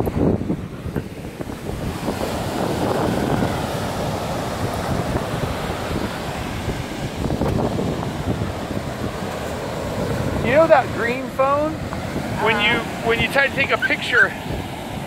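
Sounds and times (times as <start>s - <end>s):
ocean surf washing ashore: 0.0s - 15.0s
wind buffeting microphone: 0.0s - 15.0s.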